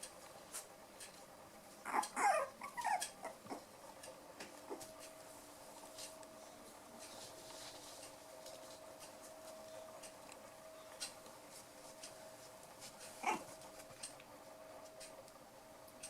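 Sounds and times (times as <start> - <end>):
puppies yelping: 1.8 - 3.7, 13.2 - 13.6.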